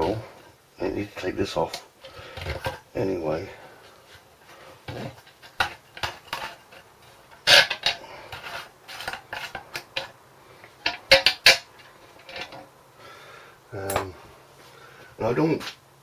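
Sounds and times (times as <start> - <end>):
metal parts clinking: 7.4 - 10.1, 10.8 - 12.6.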